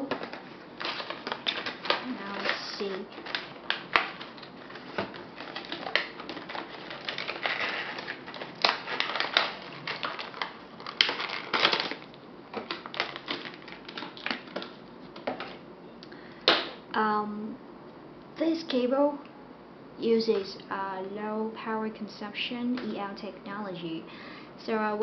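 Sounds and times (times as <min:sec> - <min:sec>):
plastic packaging crinkling: 0:00.0 - 0:15.6.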